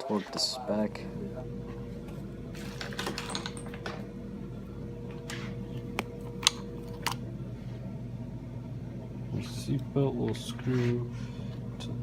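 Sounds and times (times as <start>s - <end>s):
steady low hum: 0.0s - 12.0s
tools and parts clicking and knocking: 2.6s - 4.0s.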